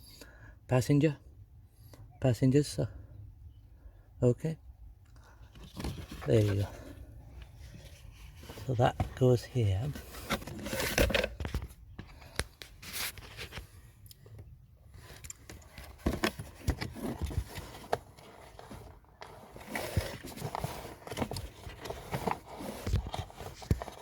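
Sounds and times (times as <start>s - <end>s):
filter scraping into plastic housing: 9.9s - 11.7s.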